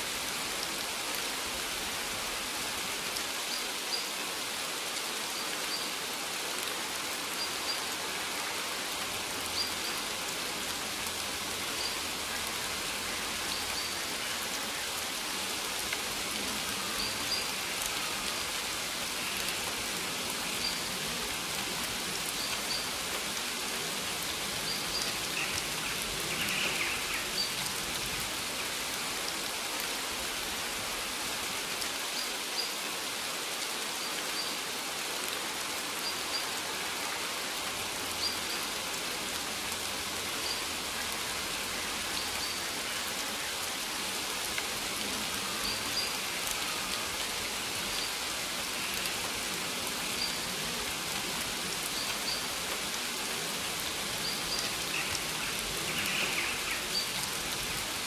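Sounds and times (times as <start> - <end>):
rain hissing on leaves: 0.0 - 58.0.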